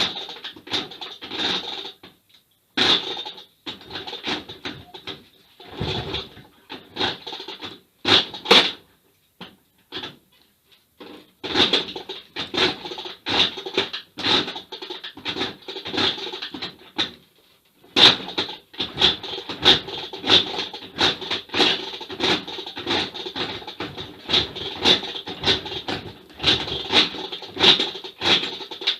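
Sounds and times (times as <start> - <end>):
kickstarter clattering: 5.6 - 6.5
motorcycle engine turning over: 5.6 - 7.1.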